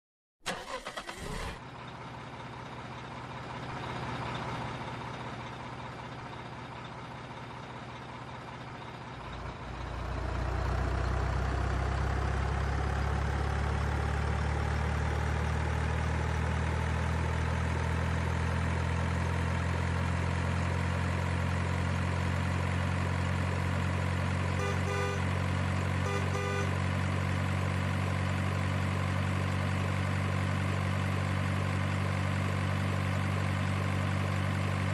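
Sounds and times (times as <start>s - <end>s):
truck engine idling: 0.5s - 34.9s
short beeps: 24.6s - 25.2s, 26.1s - 26.7s.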